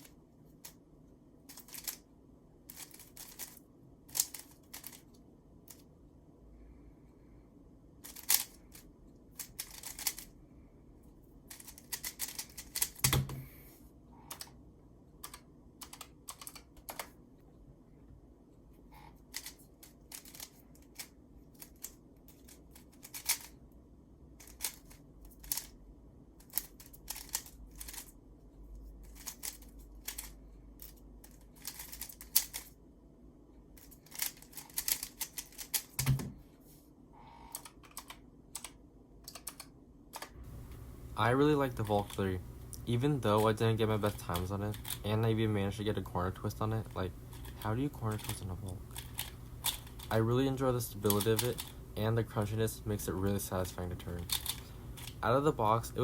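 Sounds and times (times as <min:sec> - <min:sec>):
puzzle cube clicking turns: 0:01.5 - 0:02.0, 0:02.7 - 0:05.1, 0:08.0 - 0:10.3, 0:11.5 - 0:13.4, 0:19.2 - 0:23.5, 0:24.4 - 0:25.7, 0:26.4 - 0:28.1, 0:29.0 - 0:30.4, 0:31.2 - 0:32.8, 0:33.8 - 0:36.2, 0:37.5 - 0:56.0.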